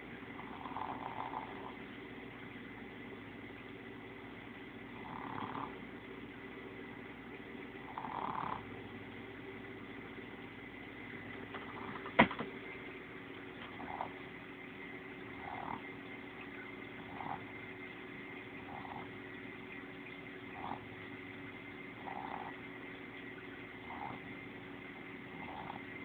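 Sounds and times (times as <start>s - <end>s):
faint steady hum: 0.0s - 26.0s
dog snoring: 0.4s - 1.8s, 4.9s - 5.9s, 7.8s - 8.7s, 11.6s - 12.2s, 13.6s - 14.3s, 15.3s - 16.0s, 17.0s - 17.6s, 18.6s - 19.2s, 20.5s - 21.0s, 22.0s - 22.7s, 23.8s - 24.4s, 25.3s - 26.0s.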